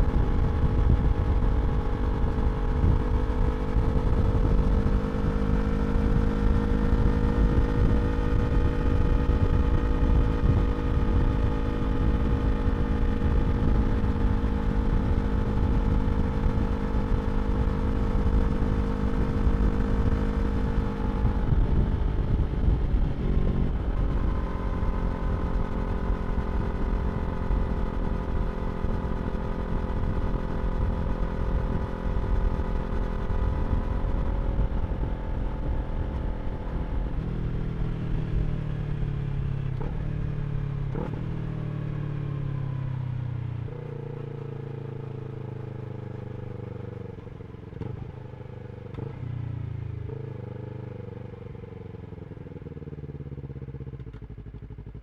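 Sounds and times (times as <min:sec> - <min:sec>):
wind noise on microphone: 0:00.0 - 0:16.6, 0:20.8 - 0:25.4
motorcycle engine running: 0:00.0 - 0:55.0.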